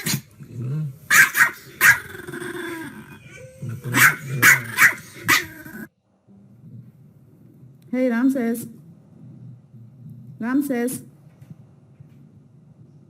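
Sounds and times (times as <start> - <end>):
dog growling: 0.0 - 7.5, 9.0 - 10.4
dog barking: 1.1 - 2.2, 3.8 - 5.9.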